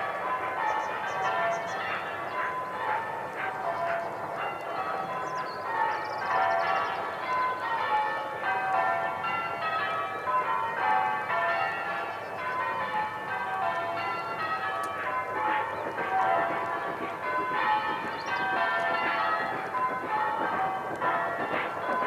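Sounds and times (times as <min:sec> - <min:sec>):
church bells ringing: 0:00.0 - 0:22.0.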